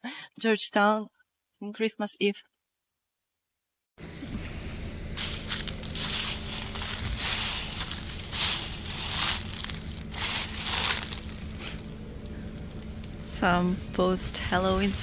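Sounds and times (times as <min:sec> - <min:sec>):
steady low hum: 0:04.0 - 0:15.0
crunching and rustling: 0:04.1 - 0:13.7.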